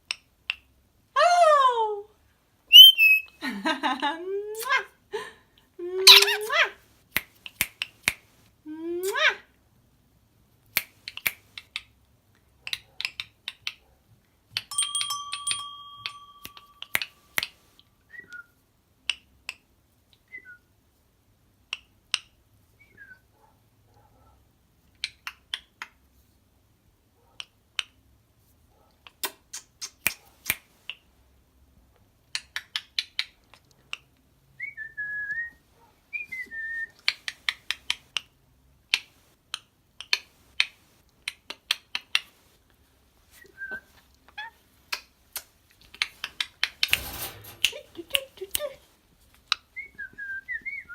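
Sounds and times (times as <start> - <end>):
short falling chirps: 2.7 - 3.3.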